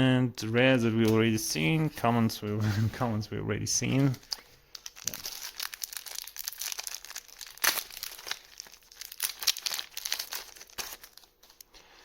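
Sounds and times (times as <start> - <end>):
foil wrapper crinkling and tearing: 3.9 - 12.0.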